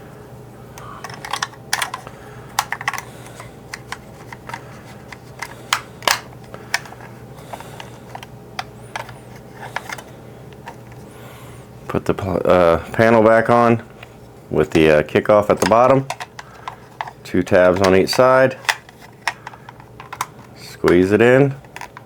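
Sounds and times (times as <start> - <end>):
plastic parts clicking: 0.8 - 10.8, 15.5 - 21.0, 21.6 - 22.0.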